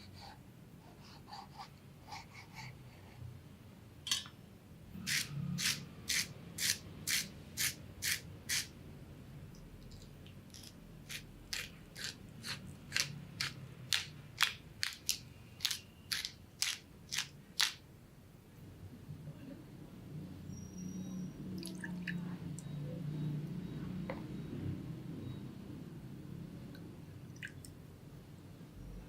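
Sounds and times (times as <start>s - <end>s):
knife cutting vegetables on board: 10.5s - 17.8s.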